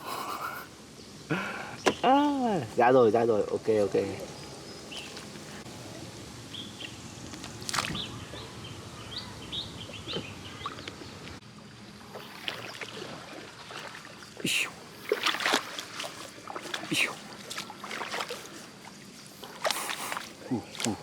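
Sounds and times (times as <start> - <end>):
small birds chirping: 0.1 - 11.4, 13.9 - 21.0
water sloshing and splashing: 4.2 - 5.9, 7.3 - 8.2, 12.0 - 21.0.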